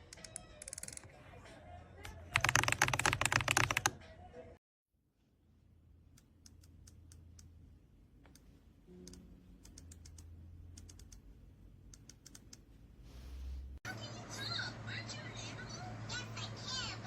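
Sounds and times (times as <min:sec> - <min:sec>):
mechanical keyboard typing: 0:00.0 - 0:01.0, 0:02.3 - 0:04.0
low steady hum: 0:05.2 - 0:16.4.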